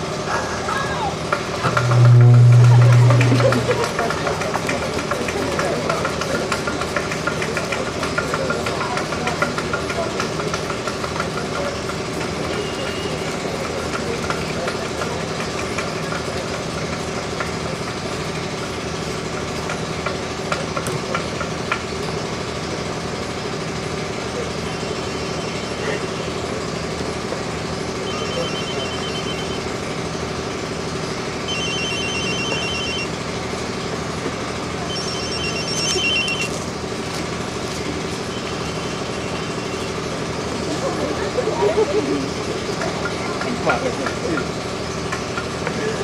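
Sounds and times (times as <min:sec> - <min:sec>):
steady low hum: 0:01.6 - 0:04.2
telephone ringing: 0:28.0 - 0:29.8, 0:31.4 - 0:33.2, 0:34.9 - 0:36.6.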